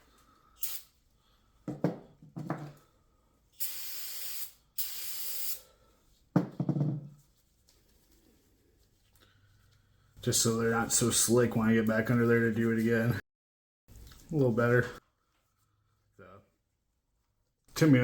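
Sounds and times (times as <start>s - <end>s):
aerosol spray bursts: 0.6s - 1.0s, 3.6s - 5.7s.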